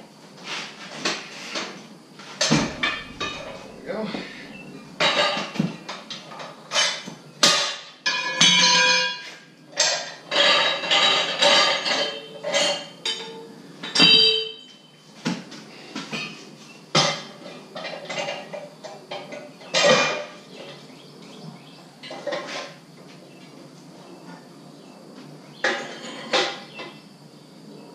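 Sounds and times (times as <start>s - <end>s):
metal tools clanking: 2.4s - 5.6s.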